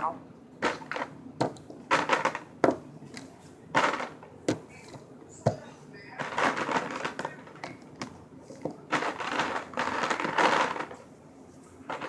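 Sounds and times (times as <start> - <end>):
plastic toys rustling and clattering: 0.6 - 2.5, 3.1 - 5.0, 6.2 - 11.1.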